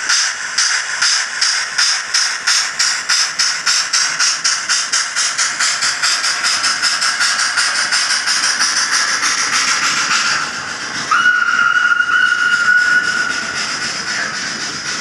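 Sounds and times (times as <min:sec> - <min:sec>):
model steam locomotive chuffs: 0:00.0 - 0:15.0
steam whistle blast: 0:11.1 - 0:14.4.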